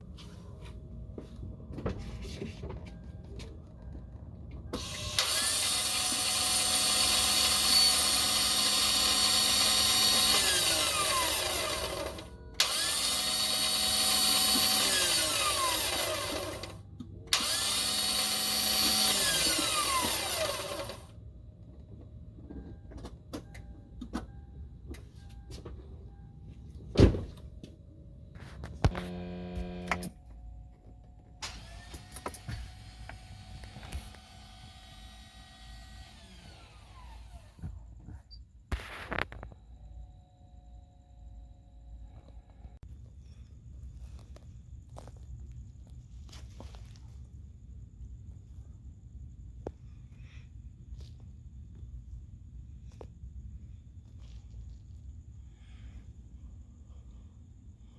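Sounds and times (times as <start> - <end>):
starter motor whining: 4.8 - 21.1, 28.8 - 30.2, 31.4 - 37.7
thump: 27.0 - 27.4.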